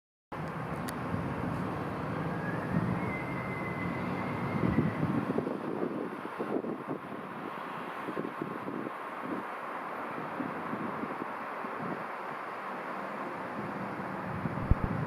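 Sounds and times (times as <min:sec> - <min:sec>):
low crackling outdoor rumble: 0:05.2 - 0:15.0.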